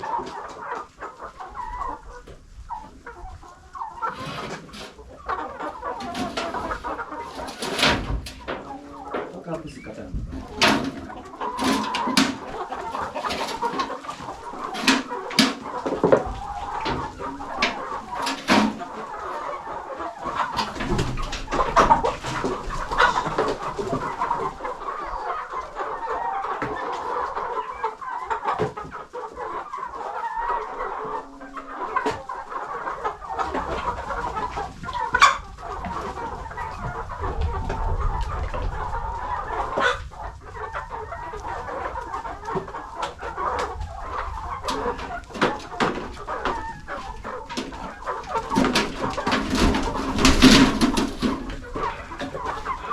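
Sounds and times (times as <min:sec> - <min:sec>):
chickens clucking: 0:00.0 - 0:52.9
chicks cheeping: 0:00.0 - 0:52.9
sharp clicks and knocks: 0:05.9 - 0:09.4, 0:10.3 - 0:18.9.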